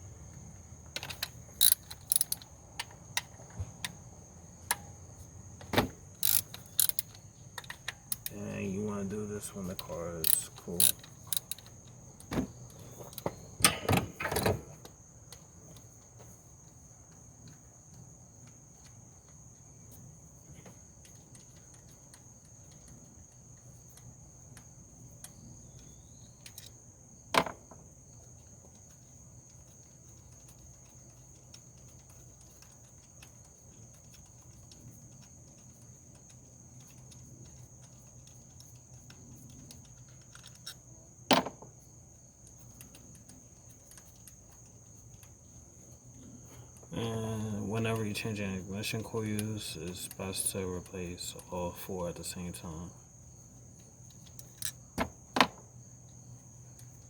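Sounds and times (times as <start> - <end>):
socket wrench clicks and clanks: 1.0 - 3.4, 6.2 - 8.4, 9.6 - 11.8, 39.8 - 40.8, 54.2 - 54.8.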